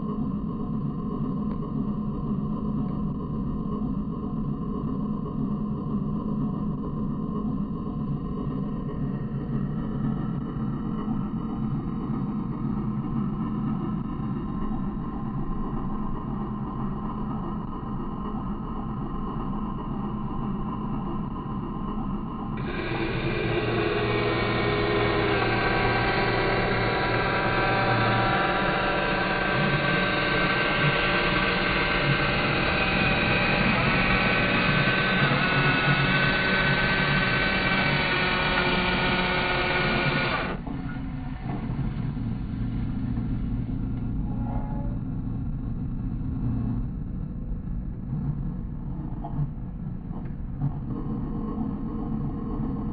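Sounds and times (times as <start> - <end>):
constant low hum: 0.0 - 52.9
toy electric motors whining: 22.6 - 40.7.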